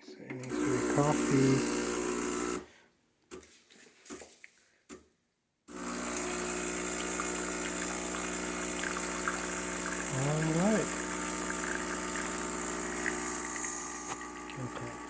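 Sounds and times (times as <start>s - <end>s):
espresso machine pump humming: 0.4s - 2.6s, 5.7s - 15.0s
water flowing through machine: 0.4s - 2.6s, 5.7s - 15.0s.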